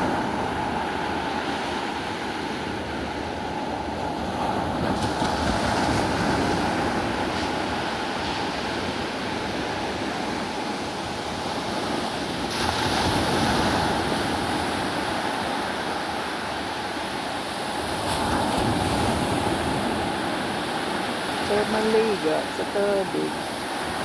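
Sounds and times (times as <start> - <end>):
sea waves breaking on shore: 0.0 - 24.0.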